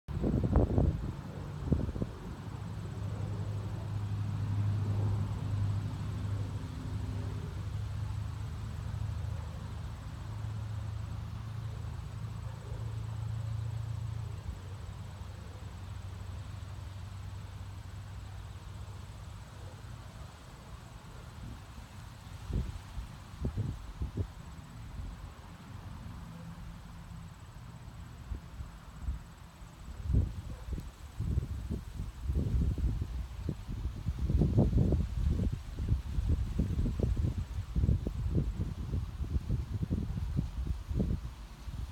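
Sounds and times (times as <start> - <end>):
wind buffeting microphone: 0.1 - 4.0, 30.0 - 41.9.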